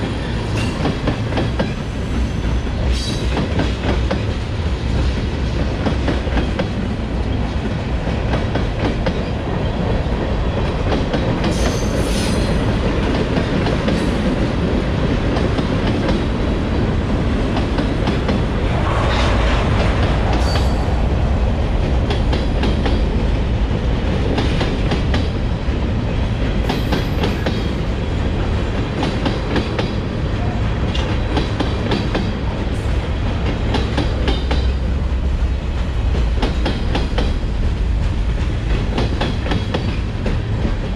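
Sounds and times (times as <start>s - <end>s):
train wheels clicking over rail joints: 0.0s - 16.4s, 21.8s - 30.1s, 30.8s - 40.9s.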